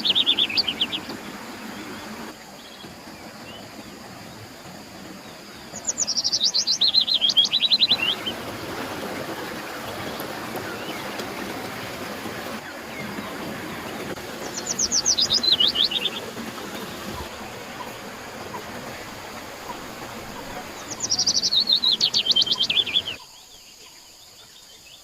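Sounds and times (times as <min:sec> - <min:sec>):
songbird trilling: 0:00.0 - 0:01.9, 0:05.2 - 0:08.4, 0:14.4 - 0:16.3, 0:19.7 - 0:23.5
flowing water rushing: 0:00.0 - 0:23.3.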